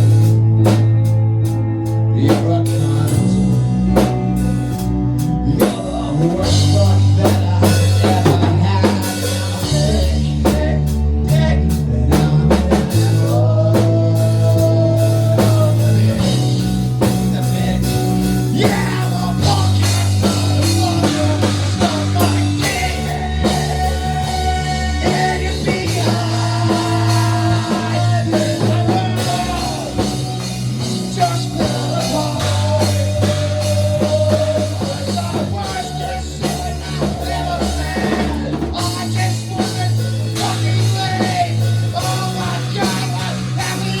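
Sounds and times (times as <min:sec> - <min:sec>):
rock music with drums and guitar: 0:00.0 - 0:44.0
sung melody line: 0:00.0 - 0:44.0.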